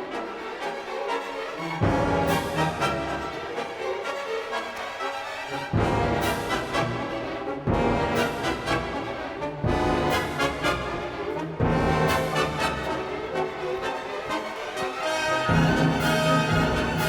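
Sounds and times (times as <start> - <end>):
orchestral music with brass: 0.0 - 17.0.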